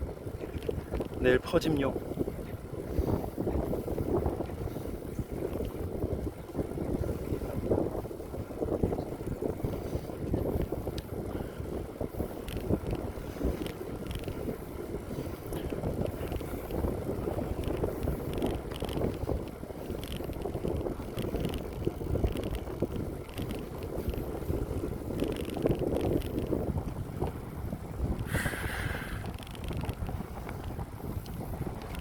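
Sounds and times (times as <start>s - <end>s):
bicycle ticks and rattles: 0.0s - 32.0s
wind buffeting microphone: 0.0s - 32.0s.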